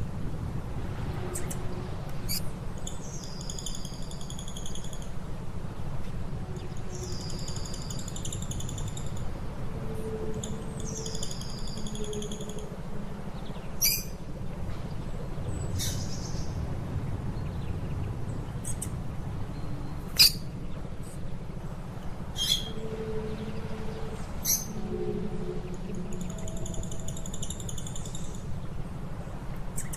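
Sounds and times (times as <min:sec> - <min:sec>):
lovebird trills and chirps: 0:13.8 - 0:14.1, 0:20.2 - 0:20.4.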